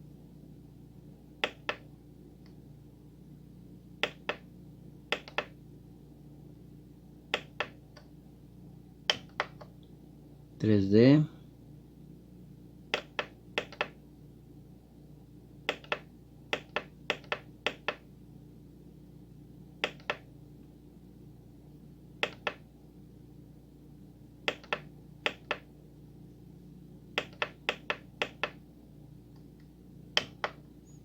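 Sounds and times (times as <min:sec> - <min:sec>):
faint steady hum: 0:00.0 - 0:31.0
keyboard buttons clicking: 0:01.4 - 0:01.9, 0:04.0 - 0:04.4, 0:05.1 - 0:05.5, 0:07.3 - 0:08.0, 0:09.1 - 0:09.7, 0:12.9 - 0:14.0, 0:15.7 - 0:18.0, 0:19.8 - 0:20.3, 0:22.2 - 0:22.6, 0:24.5 - 0:25.7, 0:27.2 - 0:28.6, 0:30.2 - 0:30.6.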